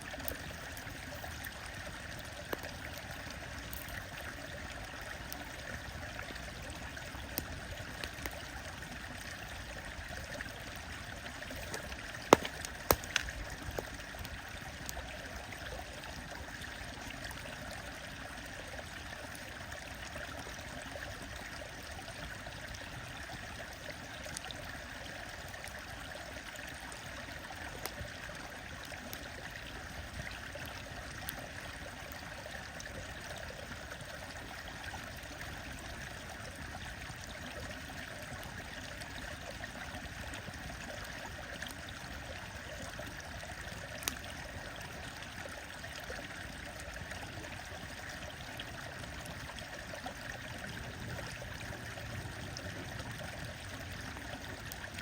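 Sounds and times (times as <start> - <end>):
stream running: 0.0 - 55.0
wood fire crackling: 0.1 - 4.3, 11.3 - 15.0.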